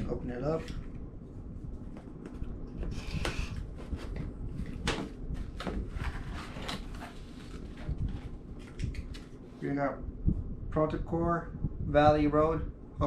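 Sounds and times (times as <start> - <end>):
box scraping and rustling: 5.4 - 8.3.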